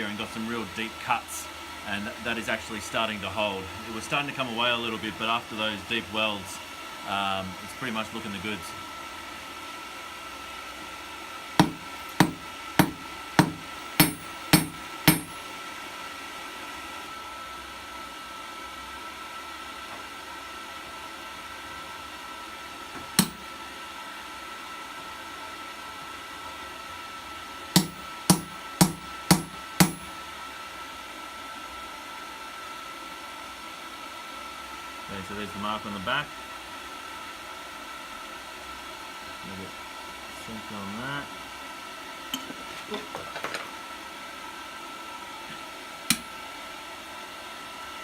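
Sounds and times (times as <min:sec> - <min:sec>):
hammer striking steel: 0:11.6 - 0:15.5, 0:23.2 - 0:23.5, 0:27.8 - 0:30.2.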